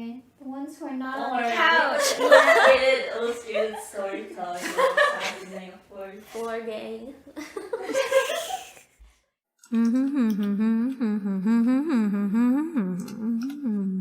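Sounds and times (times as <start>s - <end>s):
laughing talk: 1.4s - 5.8s, 7.3s - 8.9s
hummed melody: 9.7s - 14.0s.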